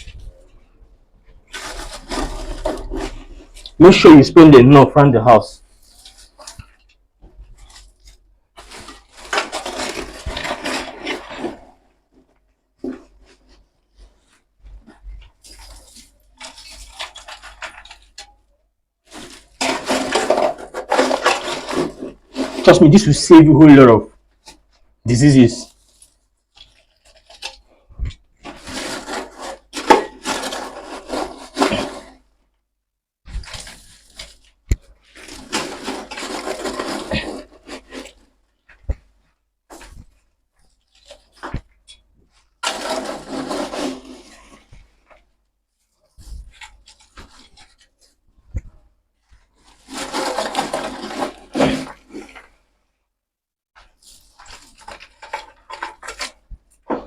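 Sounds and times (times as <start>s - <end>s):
charcoal rushing and scraping: 1.3s - 18.2s, 19.0s - 23.5s, 28.4s - 32.2s, 33.3s - 39.0s, 42.6s - 45.2s, 49.5s - 52.6s
scraping through sawdust litter: 1.6s - 3.8s, 42.6s - 44.7s.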